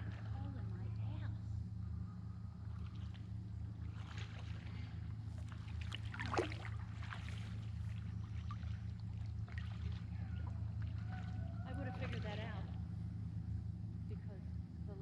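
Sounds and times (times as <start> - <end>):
steady low hum: 0.0 - 15.0
kayak paddle splashing water: 2.7 - 12.4.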